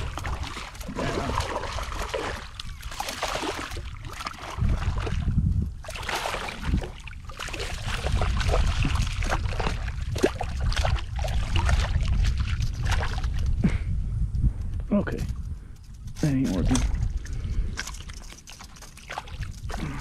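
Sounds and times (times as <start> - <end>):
shallow water splashing: 0.0 - 13.6, 16.4 - 20.0.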